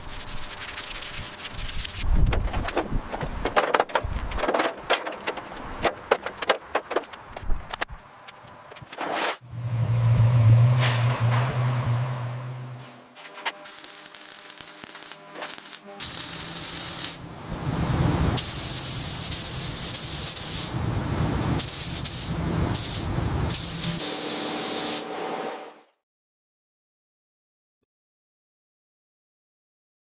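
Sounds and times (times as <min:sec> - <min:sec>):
hissing spray: 0:13.7 - 0:17.2, 0:18.4 - 0:20.8, 0:21.6 - 0:25.2.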